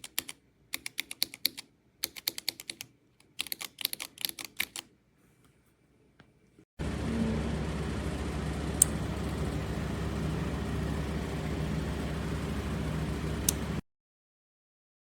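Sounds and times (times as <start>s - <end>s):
faint hum: 5.8s - 13.8s
low rumble and hiss: 6.5s - 13.8s.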